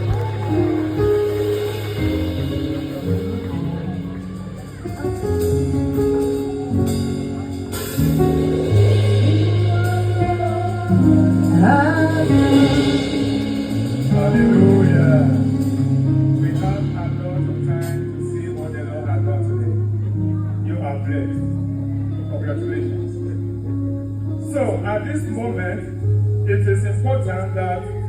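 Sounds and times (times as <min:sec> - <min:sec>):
worship music chords and bass: 0:00.0 - 0:28.0
person singing: 0:08.3 - 0:15.8.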